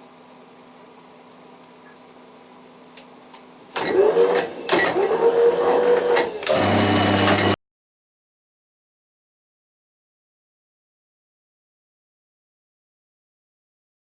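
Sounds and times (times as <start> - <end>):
milling machine motor whine: 3.8 - 7.6.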